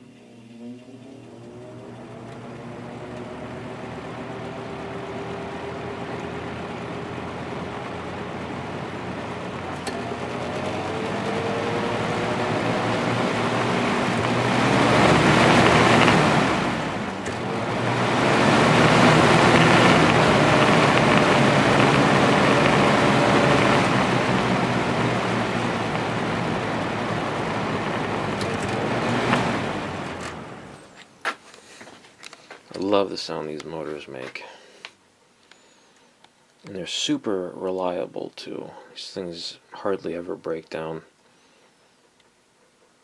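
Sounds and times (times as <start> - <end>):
fan motor hum: 0.0 - 31.0
rush of air from fan: 1.5 - 30.9.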